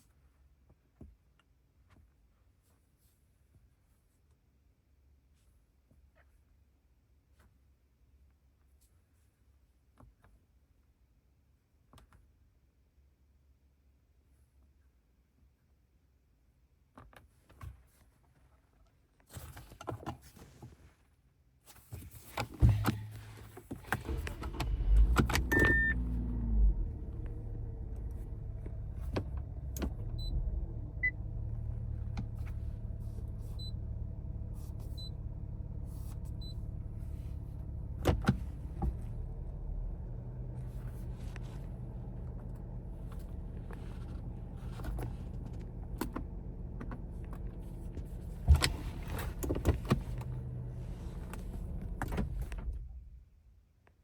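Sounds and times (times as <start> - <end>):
car engine starting and idling: 22.6 - 53.4.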